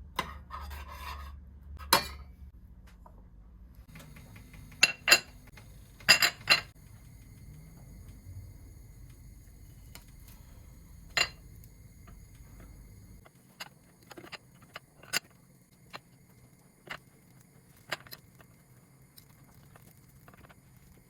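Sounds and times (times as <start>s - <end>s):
low steady hum: 1.5s - 21.0s
dishes and utensils clinking: 3.9s - 6.8s, 11.0s - 11.6s.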